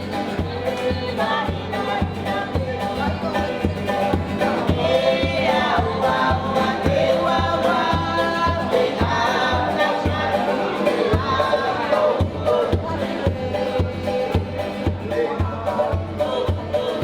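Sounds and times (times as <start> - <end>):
steady drum beat: 0.0 - 17.0
voices singing in chorus: 0.0 - 17.0.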